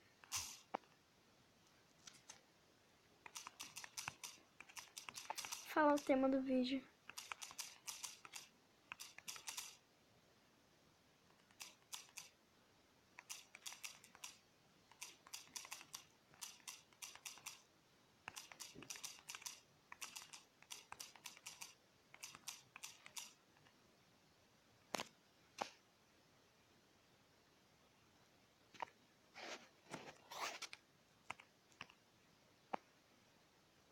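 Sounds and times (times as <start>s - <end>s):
keyboard typing clicks: 3.2s - 6.2s, 7.0s - 9.8s, 11.4s - 12.4s, 13.2s - 17.7s, 18.3s - 23.7s, 31.3s - 32.0s.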